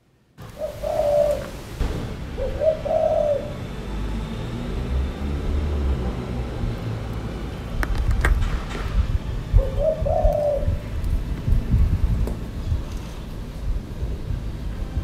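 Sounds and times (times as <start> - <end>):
dove cooing: 0.5 - 1.6, 2.4 - 3.6, 9.6 - 10.8
low rumble: 1.4 - 15.0.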